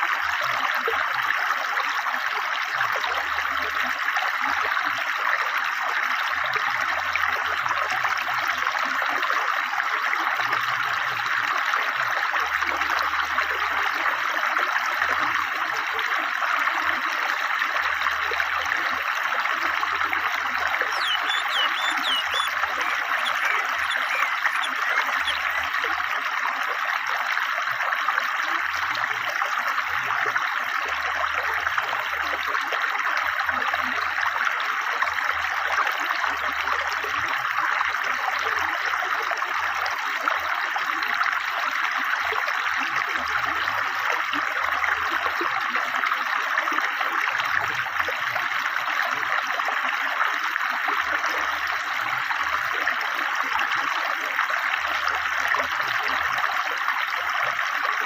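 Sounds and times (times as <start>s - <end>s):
river water flowing fast: 17.0s - 33.2s.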